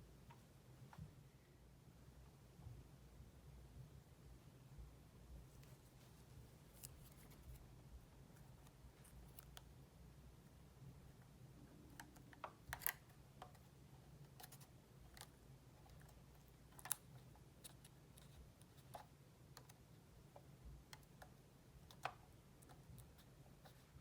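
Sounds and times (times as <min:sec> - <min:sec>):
faint small clicks and taps: 0:11.9 - 0:24.0.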